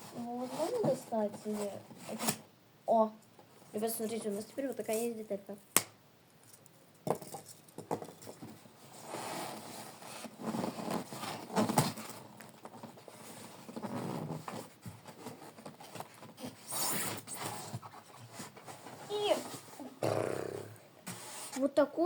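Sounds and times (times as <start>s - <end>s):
plastic parts and packaging rustling: 6.4s - 19.8s.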